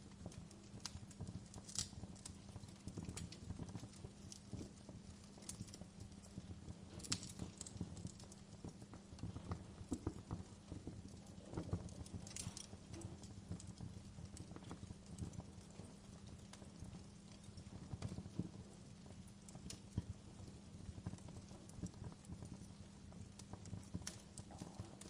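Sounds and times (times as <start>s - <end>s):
low steady fire rumble: 0.0s - 25.0s
wood fire crackling: 0.0s - 25.0s.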